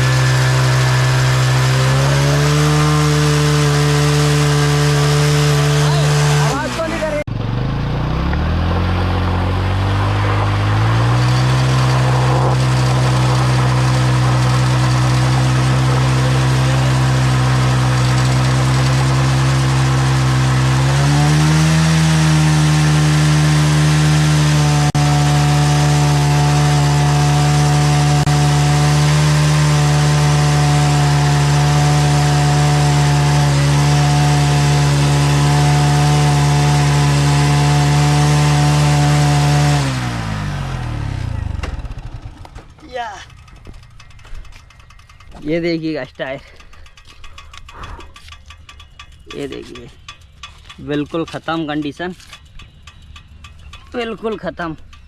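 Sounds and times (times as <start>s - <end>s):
motorcycle engine revving high: 0.0s - 46.1s.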